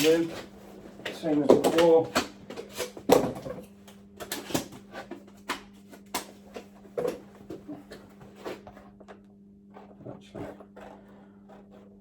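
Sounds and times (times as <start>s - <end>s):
knocks and taps of materials handled: 1.0s - 9.2s.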